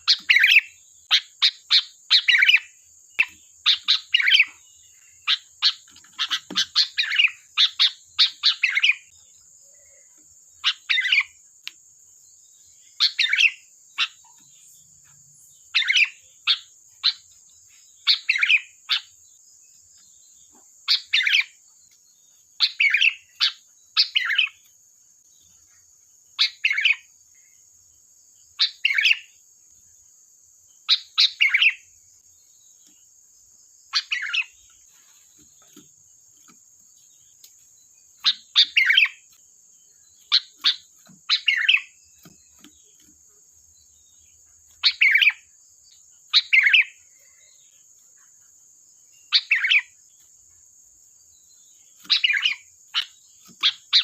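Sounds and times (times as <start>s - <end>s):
bird calling: 0.0s - 11.4s, 12.8s - 19.2s, 22.6s - 24.6s, 26.4s - 27.6s, 30.9s - 31.9s, 33.9s - 36.6s, 38.2s - 39.4s, 40.0s - 43.2s, 44.1s - 45.5s, 46.3s - 47.7s, 49.2s - 50.0s, 51.8s - 54.0s.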